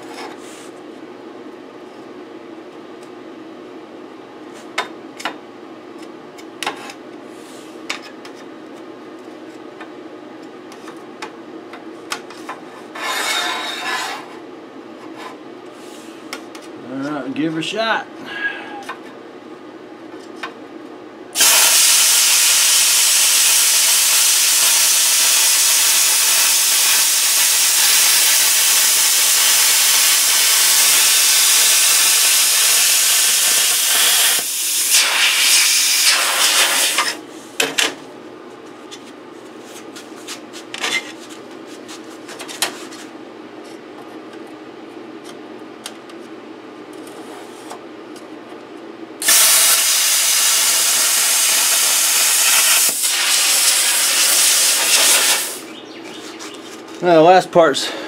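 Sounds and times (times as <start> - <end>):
plasma cutter hissing: 21.4 - 37.2, 49.2 - 55.7.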